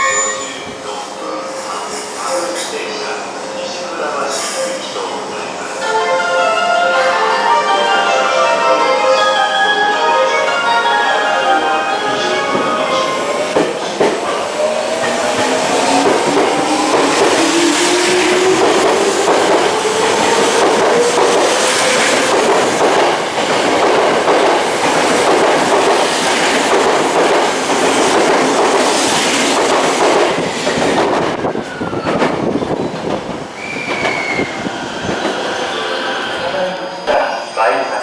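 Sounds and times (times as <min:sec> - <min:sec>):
train wheels clattering on track: 0:13.4 - 0:35.9.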